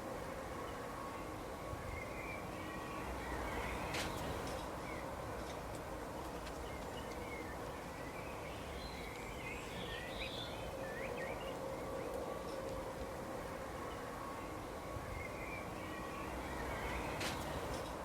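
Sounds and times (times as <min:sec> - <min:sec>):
outdoor background hiss: 0:00.0 - 0:18.0.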